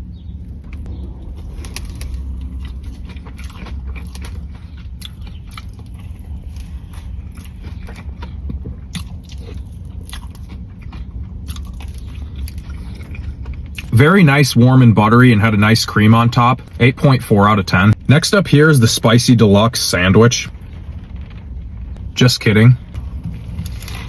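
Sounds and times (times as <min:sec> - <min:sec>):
person chewing soft cookie: 0:00.2 - 0:14.8, 0:22.8 - 0:24.0.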